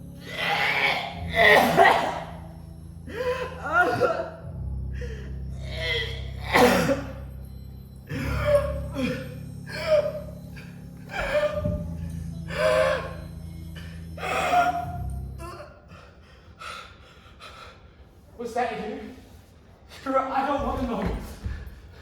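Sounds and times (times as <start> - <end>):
background music drone: 0.0 - 18.4.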